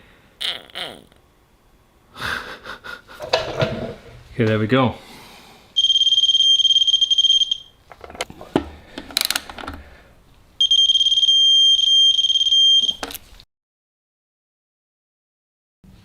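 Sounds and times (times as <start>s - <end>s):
shrill electronic beeper: 5.8s - 7.8s
sharp clicks and knocks: 7.9s - 9.8s.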